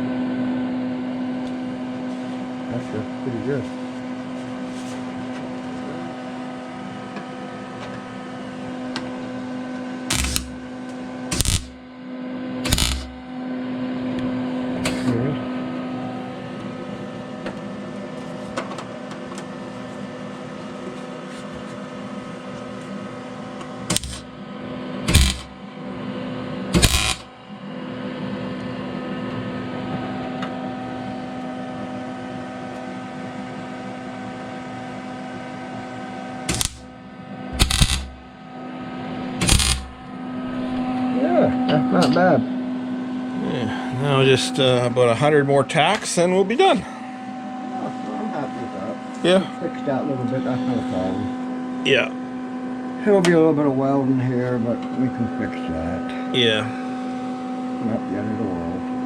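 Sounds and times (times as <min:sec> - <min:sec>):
steady hum: 0:00.0 - 0:59.0
short tack welds: 0:10.1 - 0:10.6, 0:11.3 - 0:11.8, 0:12.6 - 0:13.2, 0:23.9 - 0:24.3, 0:25.1 - 0:25.5, 0:26.8 - 0:27.2, 0:36.5 - 0:36.8, 0:37.6 - 0:38.2, 0:39.4 - 0:40.0.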